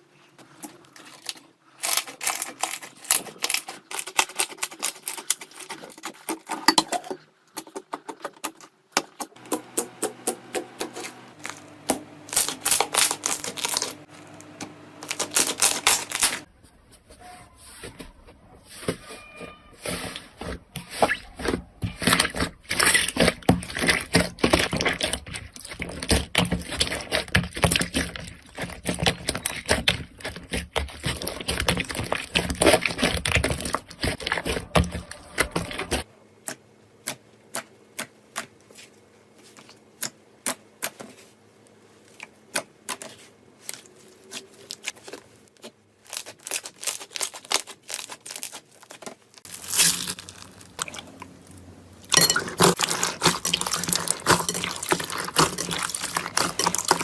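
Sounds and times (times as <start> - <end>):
slime crackling and popping: 46.0 - 51.3, 52.1 - 57.0.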